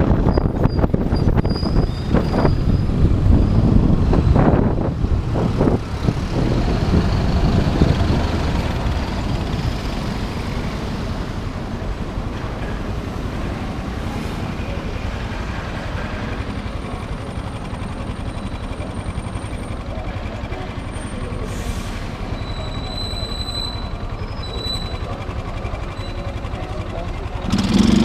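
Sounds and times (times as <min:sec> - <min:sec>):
wind on microphone: 0:00.0 - 0:08.9
motorcycle engine: 0:02.9 - 0:12.5, 0:14.7 - 0:21.4, 0:23.9 - 0:28.0.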